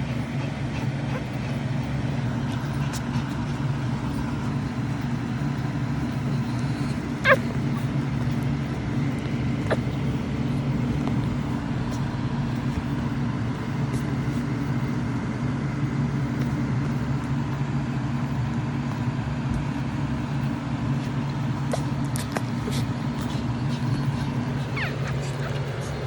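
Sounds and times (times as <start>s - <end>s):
steady low hum: 0.0s - 26.0s
puppy squeaking: 2.3s - 8.4s, 22.6s - 26.0s.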